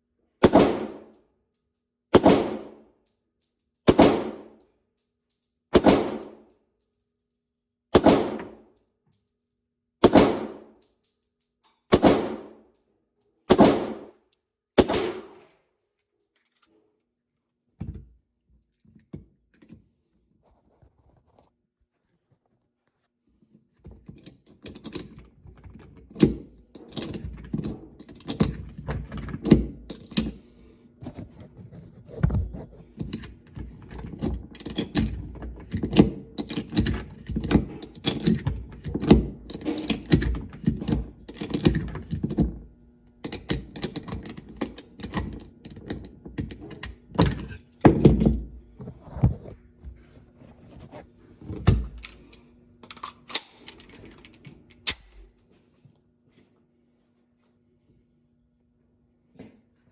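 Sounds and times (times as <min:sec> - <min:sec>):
pistol shots with echo: 0:00.4 - 0:01.1, 0:02.2 - 0:02.8, 0:03.9 - 0:04.5, 0:05.8 - 0:06.3, 0:08.0 - 0:08.6, 0:10.0 - 0:10.7, 0:11.9 - 0:12.6, 0:13.5 - 0:14.1, 0:14.8 - 0:15.4.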